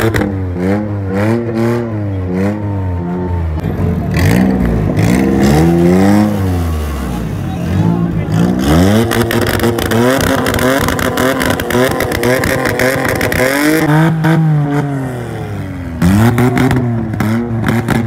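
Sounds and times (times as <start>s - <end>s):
car engine revving: 0.0s - 18.0s
exhaust crackles and pops: 9.0s - 13.8s.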